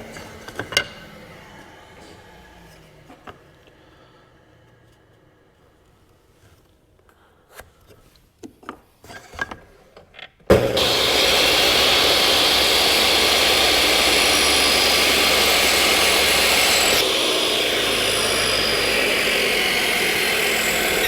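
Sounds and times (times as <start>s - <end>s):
woodworking power tool running: 0.0s - 3.4s, 10.5s - 21.0s.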